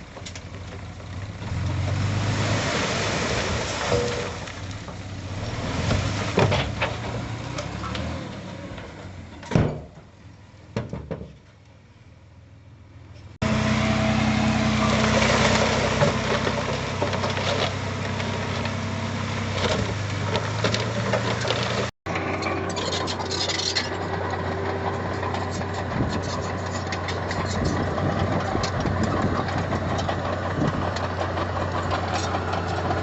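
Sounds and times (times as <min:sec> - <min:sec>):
heavy machinery diesel engine running: 0:13.4 - 0:33.0.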